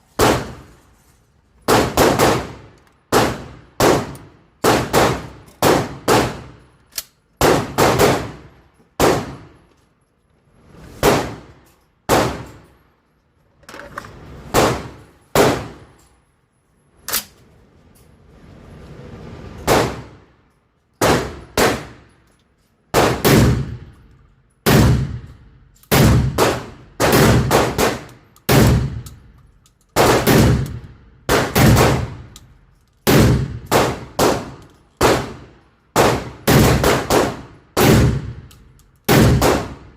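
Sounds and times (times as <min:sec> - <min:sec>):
shotgun shots: 0:00.2 - 0:00.7, 0:01.7 - 0:06.6, 0:07.4 - 0:08.4, 0:11.0 - 0:11.5, 0:12.1 - 0:12.6, 0:14.5 - 0:15.8, 0:19.7 - 0:20.2, 0:21.0 - 0:22.0, 0:22.9 - 0:23.8, 0:24.7 - 0:25.3, 0:25.9 - 0:29.0, 0:30.0 - 0:32.3, 0:33.1 - 0:35.4, 0:36.0 - 0:38.5, 0:39.1 - 0:39.9.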